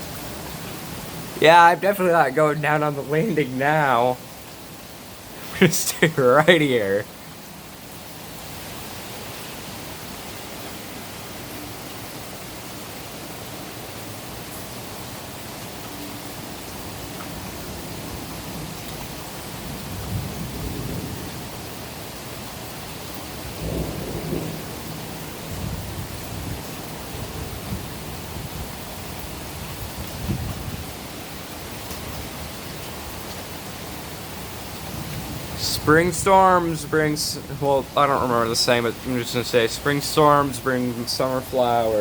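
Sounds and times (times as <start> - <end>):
heavy rain falling: 0.0 - 42.0
thunder rumbling: 34.9 - 42.0.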